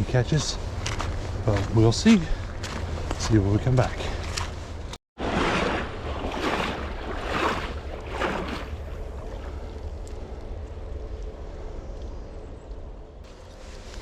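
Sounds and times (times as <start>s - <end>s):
footsteps on rocky ground: 0.0s - 5.0s.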